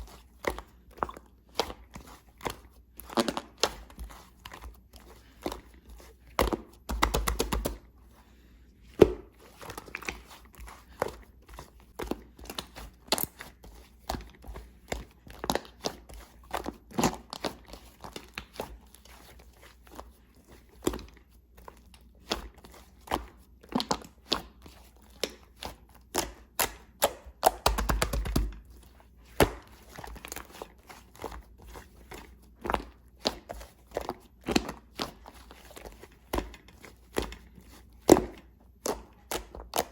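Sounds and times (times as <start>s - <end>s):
slime squished by hand: 20.7s - 39.9s.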